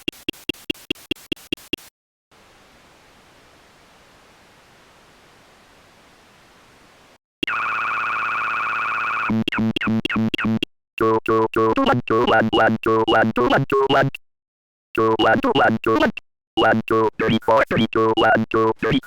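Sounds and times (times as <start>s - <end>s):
faint hiss: 2.3s - 7.2s.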